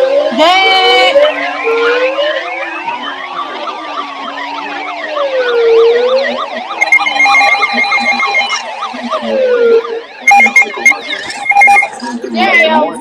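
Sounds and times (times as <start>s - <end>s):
rapid yelp siren: 0.0s - 13.0s
wailing siren: 0.0s - 13.0s
high electronic alert tone: 6.7s - 9.2s, 10.2s - 12.9s.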